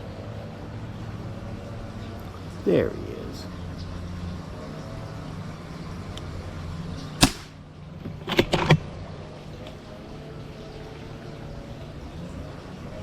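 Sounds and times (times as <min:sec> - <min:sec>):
air rifle shot: 0:07.2 - 0:07.6
sharp clicks: 0:07.2 - 0:07.6.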